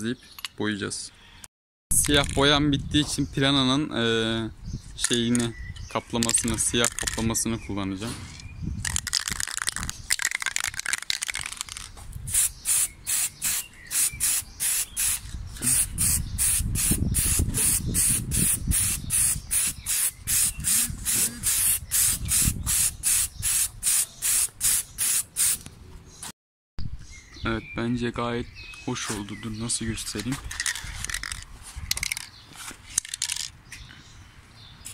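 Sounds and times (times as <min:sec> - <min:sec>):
aerosol can spraying bursts: 0:12.3 - 0:25.6.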